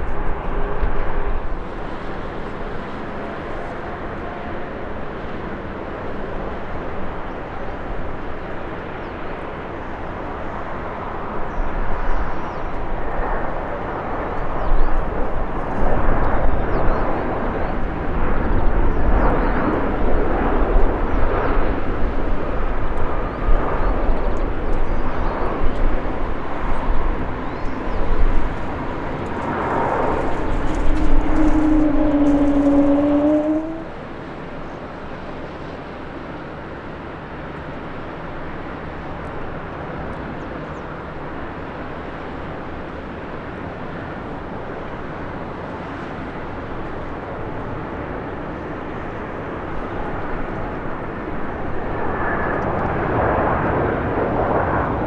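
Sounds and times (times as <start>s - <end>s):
jet airliner landing: 0.0s - 55.0s
rising whine: 26.4s - 34.0s.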